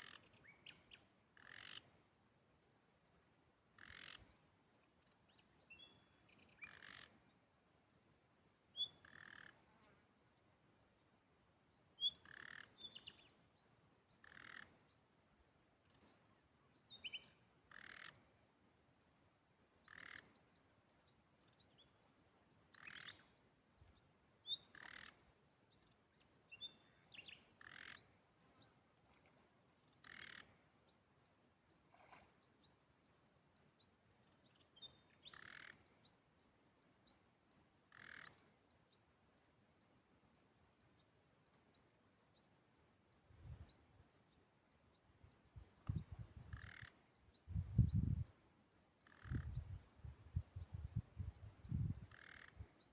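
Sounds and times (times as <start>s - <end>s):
rasping frog call: 1.4s - 1.8s, 3.8s - 4.2s, 6.7s - 7.1s, 9.0s - 9.6s, 12.2s - 12.7s, 14.2s - 14.7s, 17.7s - 18.2s, 19.9s - 20.3s, 24.7s - 25.2s, 27.6s - 28.0s, 30.0s - 30.5s, 35.3s - 35.8s, 37.9s - 38.4s, 46.5s - 46.9s.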